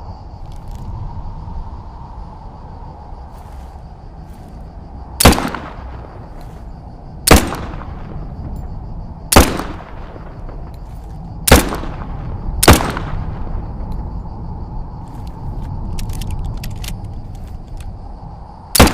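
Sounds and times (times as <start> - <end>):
pistol shots with echo: 5.2 - 6.1, 7.3 - 8.2, 9.3 - 10.7, 11.5 - 13.6.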